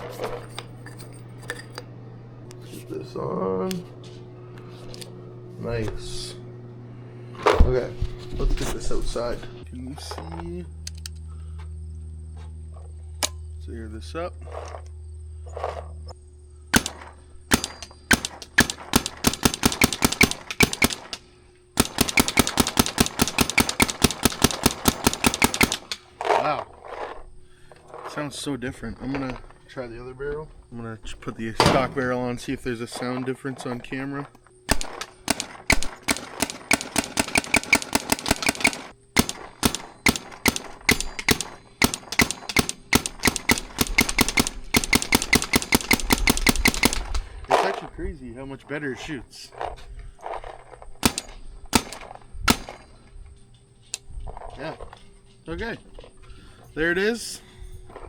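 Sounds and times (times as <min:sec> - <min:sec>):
paintball marker firing: 0:16.7 - 0:21.2, 0:21.8 - 0:26.1, 0:34.7 - 0:47.3, 0:51.0 - 0:52.9.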